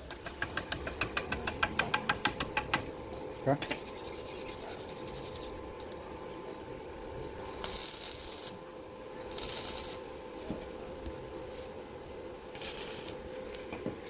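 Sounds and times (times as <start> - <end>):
rough hissing scraping: 3.5 - 5.8, 7.3 - 13.8.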